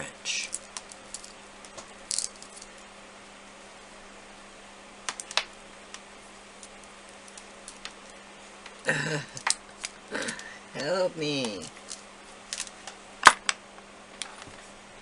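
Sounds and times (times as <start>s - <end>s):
faint steady hum: 0.0s - 15.0s
small tools clicking and tapping: 0.5s - 2.7s.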